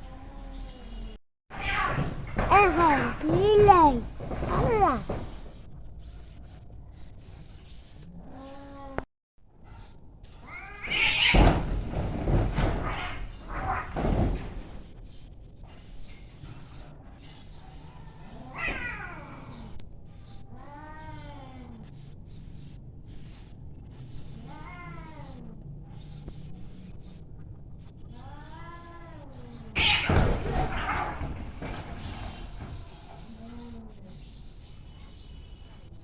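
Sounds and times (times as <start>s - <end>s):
cat yowling: 0.0s - 5.2s, 10.4s - 11.5s, 17.9s - 19.8s, 20.5s - 21.9s, 24.4s - 25.6s, 28.1s - 31.6s
cats screeching fighting: 0.0s - 5.4s, 10.4s - 14.8s, 17.5s - 21.9s, 23.9s - 26.1s, 28.0s - 34.4s.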